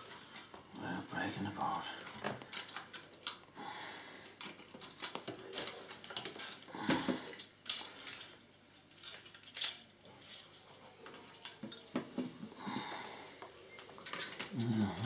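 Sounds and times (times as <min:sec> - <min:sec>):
metallic clicks and clinks: 0:02.0 - 0:03.4, 0:04.3 - 0:10.6, 0:13.8 - 0:15.0.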